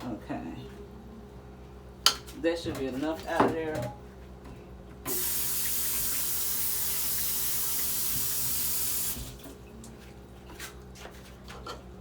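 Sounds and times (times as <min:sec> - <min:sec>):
tap running into sink: 0:06.9 - 0:09.4.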